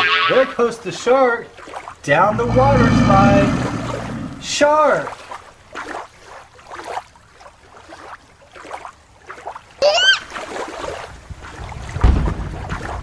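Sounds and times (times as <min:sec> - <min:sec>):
water splashing and trickling: 0:01.4 - 0:13.0
short high rising squeal: 0:02.1 - 0:04.5.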